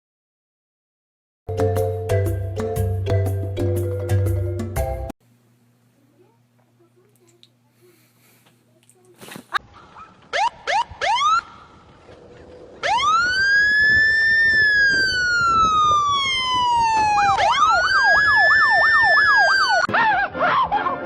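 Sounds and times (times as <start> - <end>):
emergency siren wailing and yelping: 9.7 - 11.8, 12.8 - 21.0.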